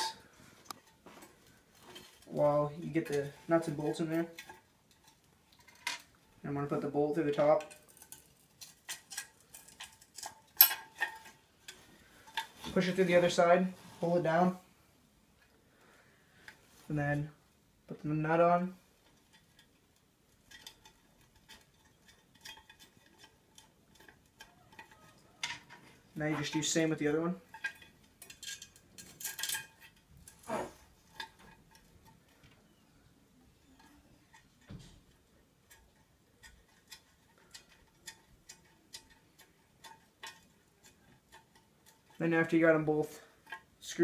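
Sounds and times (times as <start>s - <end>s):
small metal clicks and clinks: 7.4s - 12.6s, 19.0s - 26.8s, 27.4s - 32.8s, 33.4s - 44.0s.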